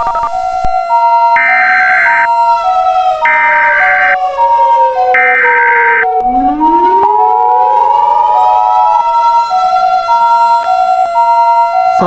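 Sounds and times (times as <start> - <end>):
two-pitch electronic siren: 0.0 - 12.0
siren tone winding down: 1.4 - 2.3, 3.2 - 4.2, 5.2 - 9.2.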